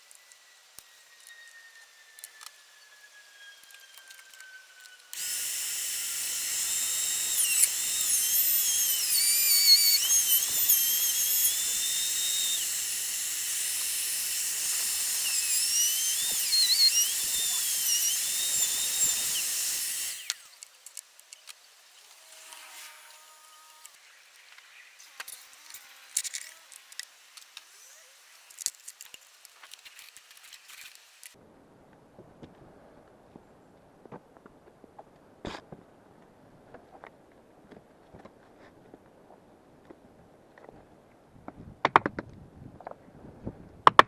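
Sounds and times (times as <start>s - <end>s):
faint falling whine: 0.0s - 13.4s
power tool and vacuum whine: 0.0s - 31.4s.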